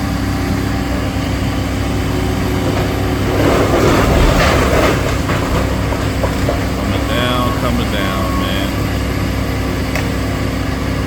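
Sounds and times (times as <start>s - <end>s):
engine running: 0.0s - 11.0s
building demolition clatter: 0.4s - 10.2s
debris falling: 1.9s - 8.8s.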